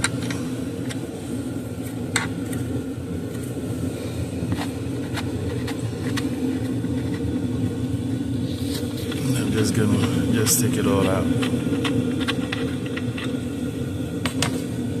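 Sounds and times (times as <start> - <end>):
low background rumble: 0.0 - 15.0.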